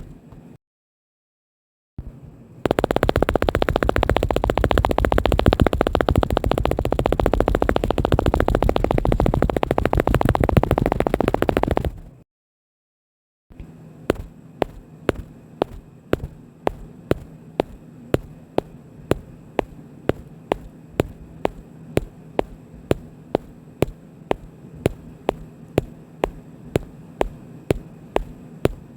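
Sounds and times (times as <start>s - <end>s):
steady low hum: 2.0s - 12.2s, 13.5s - 28.9s
footsteps walking: 14.1s - 28.9s.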